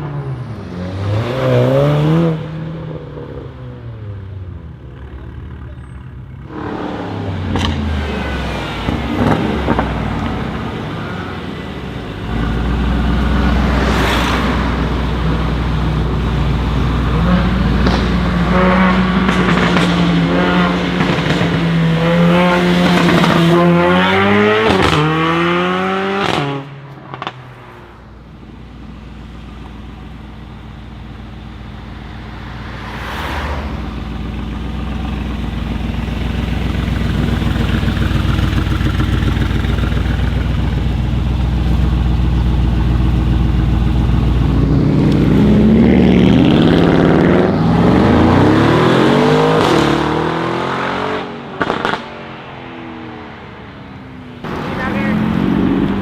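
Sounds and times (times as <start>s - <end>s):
car engine accelerating: 6.2s - 56.0s
exhaust crackles: 32.9s - 48.6s.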